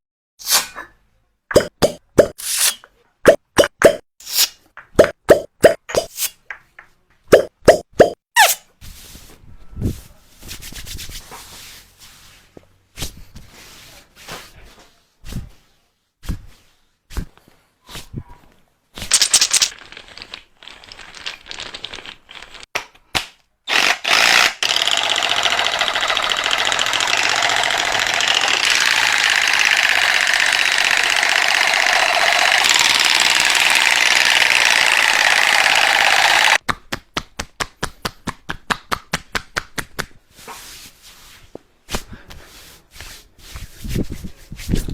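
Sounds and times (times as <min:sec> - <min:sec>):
quick run of clicks: 0:23.7 - 0:36.8
rapid buzzing rattle: 0:24.6 - 0:36.6.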